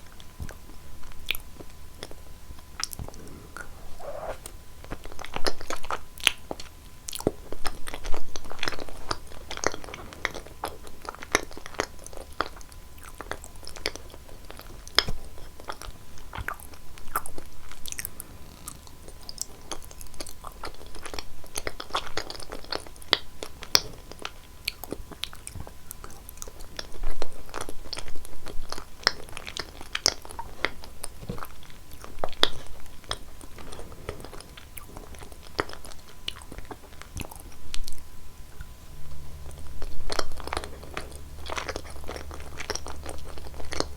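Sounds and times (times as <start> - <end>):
cheese being bitten and chewed: 38.6 - 43.9.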